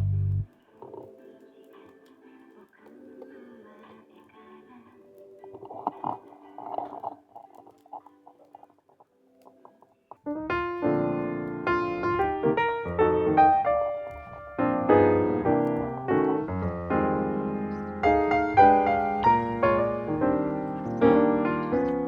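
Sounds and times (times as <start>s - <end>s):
piano music: 10.2s - 22.0s.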